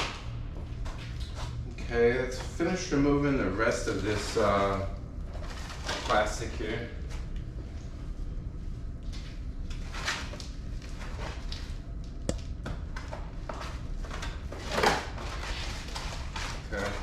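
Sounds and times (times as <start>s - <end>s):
plastic wrap rustling: 14.2s - 17.0s.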